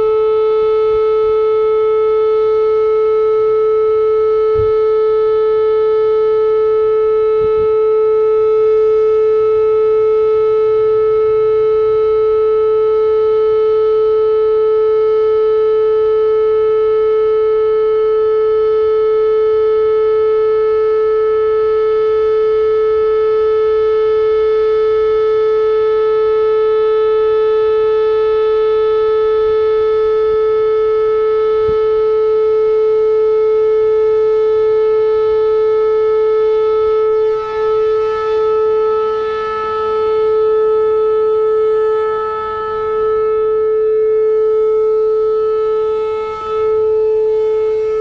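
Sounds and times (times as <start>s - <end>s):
steady warning siren tone: 0.0s - 48.0s.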